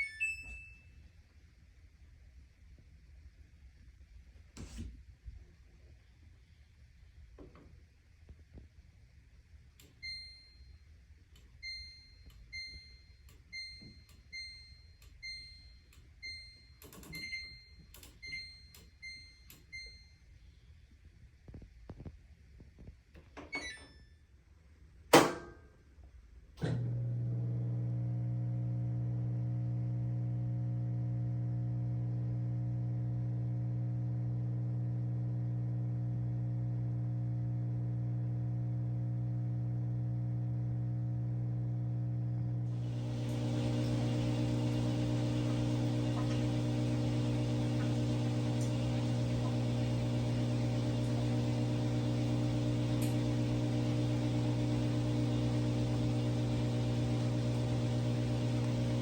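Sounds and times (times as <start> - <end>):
electric motor hum: 26.8 - 59.0
washing machine clicks: 42.8 - 53.4.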